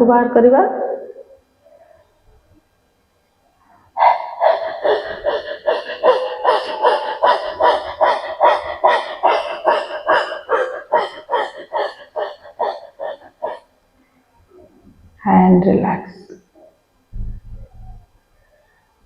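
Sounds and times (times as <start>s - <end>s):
woman panting rapidly: 4.0s - 13.6s.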